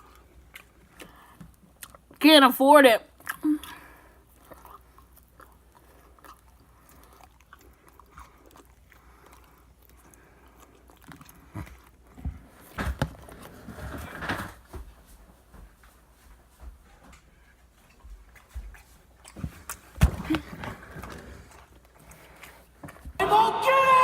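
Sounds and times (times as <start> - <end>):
person chewing: 0.0 - 2.2, 3.1 - 13.6, 17.1 - 23.2.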